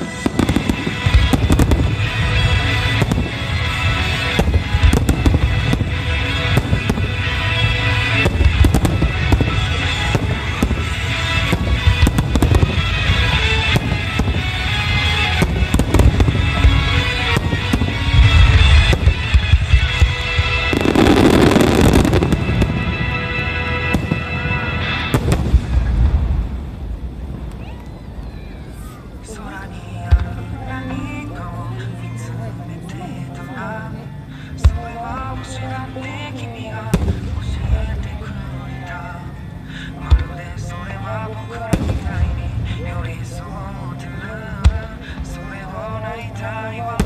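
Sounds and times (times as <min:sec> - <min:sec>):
loud music: 0:00.0 - 0:27.0, 0:29.2 - 0:47.0
rushing firework burst: 0:00.0 - 0:27.4
fireworks bursting: 0:00.0 - 0:32.2, 0:34.5 - 0:39.1, 0:40.0 - 0:47.0.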